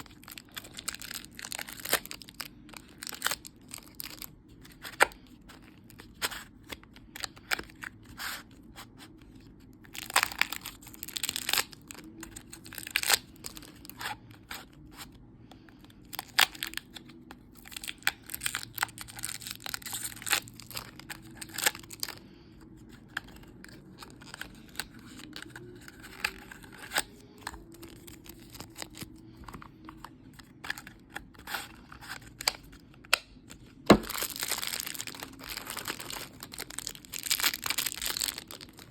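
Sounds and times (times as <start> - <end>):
packaging tearing and crinkling: 0.0 - 5.2, 9.9 - 14.0, 17.6 - 22.2, 23.1 - 29.2, 33.4 - 38.9.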